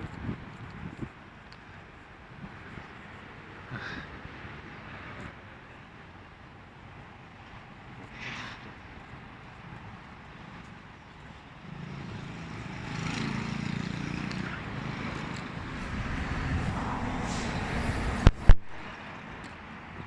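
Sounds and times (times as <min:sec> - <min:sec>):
vehicle passing by: 0:11.7 - 0:19.3.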